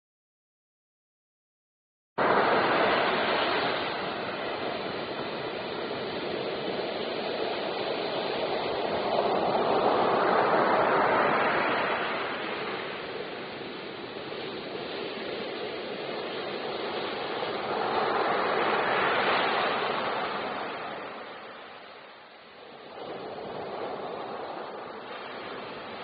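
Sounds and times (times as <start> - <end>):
rushing water: 2.2 - 26.0.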